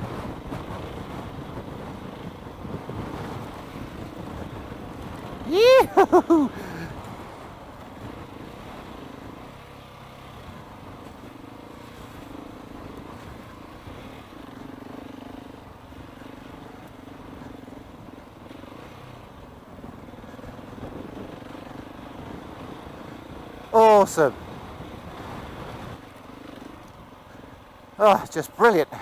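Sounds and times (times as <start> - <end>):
wind noise: 0.0 - 8.6
dirt bike engine running: 0.0 - 29.0.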